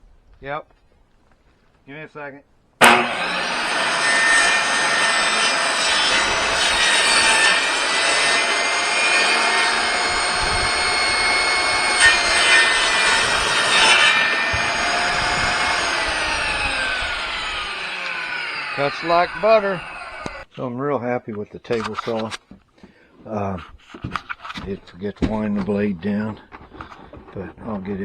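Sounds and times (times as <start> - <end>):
saw blade cutting plywood: 2.8 - 20.5
table saw motor whining: 2.8 - 20.5.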